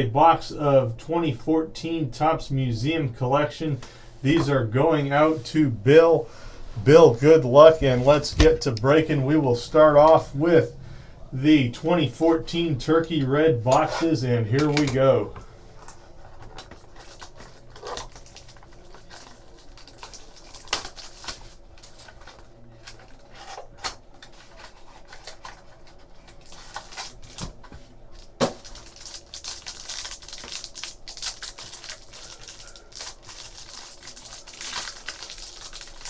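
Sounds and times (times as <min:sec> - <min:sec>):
card packs torn and crinkled: 0:16.6 - 0:36.0.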